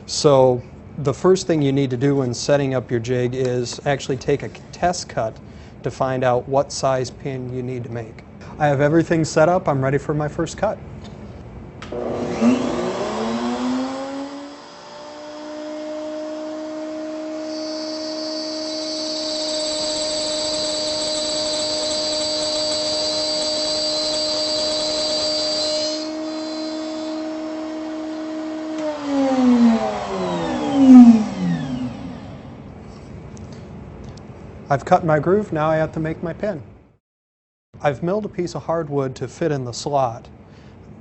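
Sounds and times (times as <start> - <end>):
router bit cutting wood: 11.9 - 32.7
router motor spinning: 11.9 - 32.7.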